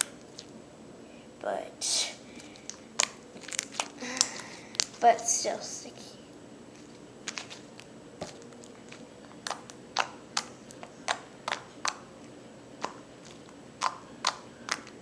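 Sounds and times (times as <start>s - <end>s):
slime clicking and popping: 2.6s - 5.0s, 8.2s - 12.1s, 12.8s - 15.0s.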